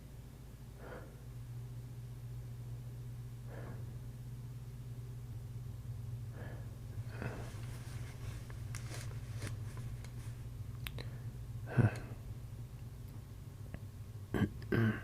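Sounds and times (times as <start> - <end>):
steady low hum: 0.0 - 15.0
faint rustling: 7.2 - 10.5.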